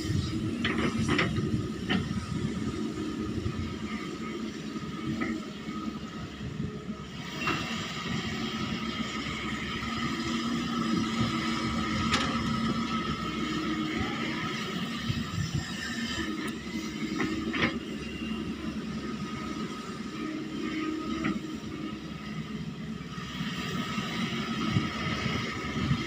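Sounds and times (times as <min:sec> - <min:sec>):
excavator engine running: 0:00.0 - 0:26.0.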